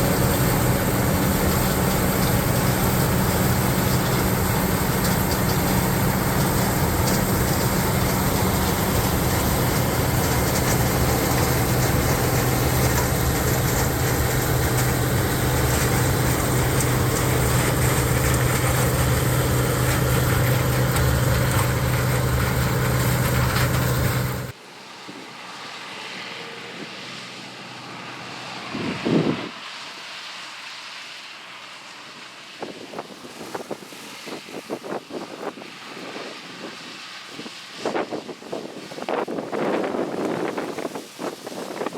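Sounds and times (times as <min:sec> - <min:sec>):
combine harvester engine humming: 0:00.0 - 0:34.4
wind noise: 0:28.7 - 0:29.6, 0:37.4 - 0:41.9.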